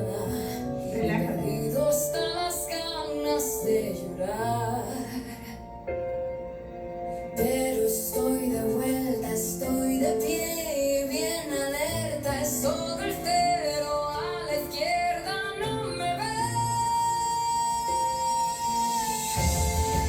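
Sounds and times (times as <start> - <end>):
woman singing: 0.0 - 5.8, 7.3 - 20.0
guitar: 5.8 - 20.0.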